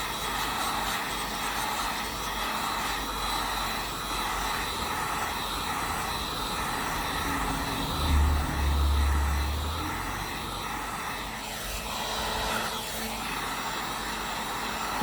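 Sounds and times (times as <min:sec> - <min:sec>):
heat gun fan blowing: 0:00.0 - 0:15.0
low rumble: 0:06.3 - 0:10.8.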